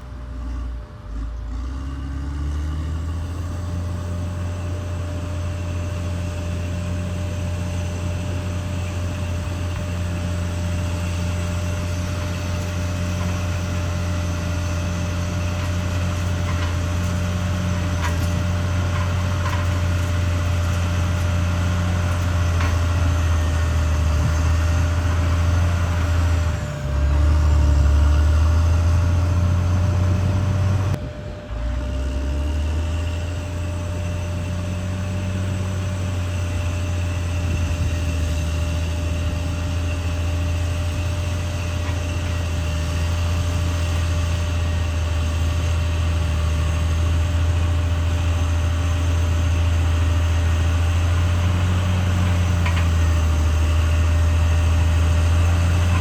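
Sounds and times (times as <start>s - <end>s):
bulldozer diesel engine drone: 0.0s - 56.0s.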